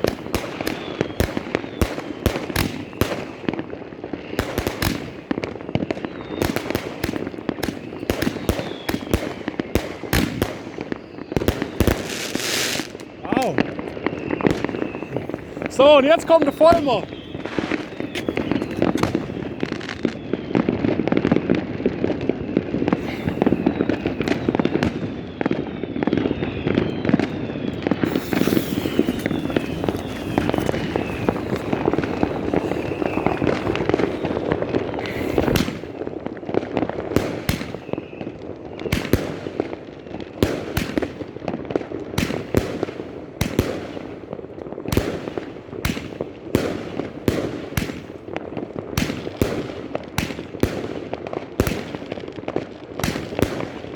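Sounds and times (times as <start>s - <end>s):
firework whistles: 0.0s - 41.4s
firework bangs: 0.0s - 53.9s
fireworks crackling: 0.0s - 53.9s.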